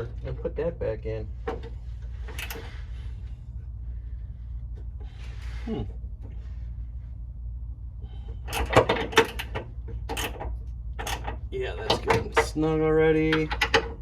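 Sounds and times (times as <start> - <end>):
low steady hum: 0.0 - 14.0
metal clicks and knocks: 8.4 - 12.6, 13.2 - 14.0.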